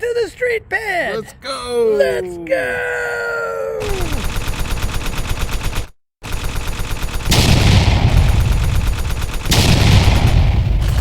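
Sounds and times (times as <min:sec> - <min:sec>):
rapid crackle of sharp pops: 0:06.8 - 0:11.0.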